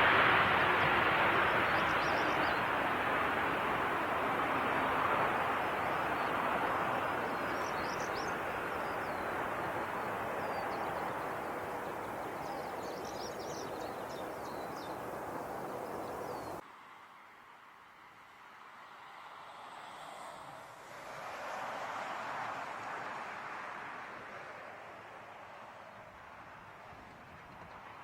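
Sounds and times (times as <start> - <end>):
jet airliner engine rush: 0.0 - 16.6
small birds chirping: 0.9 - 3.0, 5.2 - 16.6.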